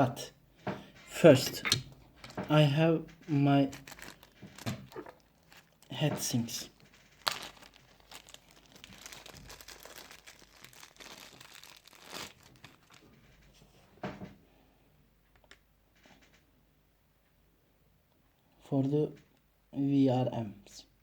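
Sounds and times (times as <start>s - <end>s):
plastic packaging crinkling: 3.3s - 13.5s.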